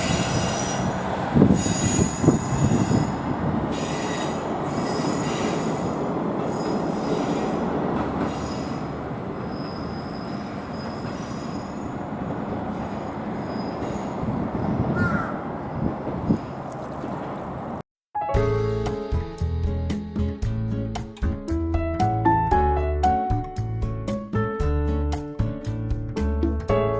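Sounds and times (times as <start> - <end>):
train wheels squealing: 0.0 - 16.6
train rumbling on track: 0.0 - 17.8
music: 18.2 - 26.9.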